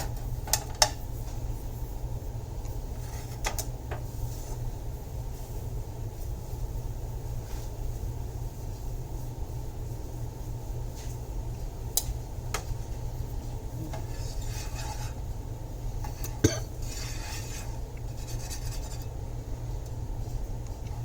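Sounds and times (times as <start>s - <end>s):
steady low hum: 0.0s - 21.0s
utensils scraping cookware: 13.9s - 15.2s, 16.0s - 19.2s.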